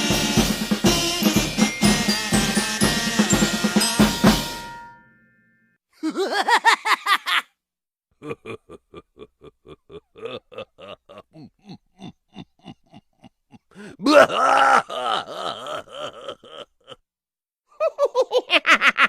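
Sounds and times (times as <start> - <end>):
drum-kit beat: 0.0 - 4.9
short repeated pulses: 0.0 - 4.9.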